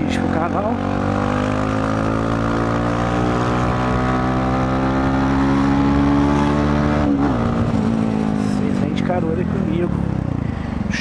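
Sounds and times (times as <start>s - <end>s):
motorcycle engine accelerating: 0.0s - 11.0s
rushing wind noise: 3.2s - 8.9s.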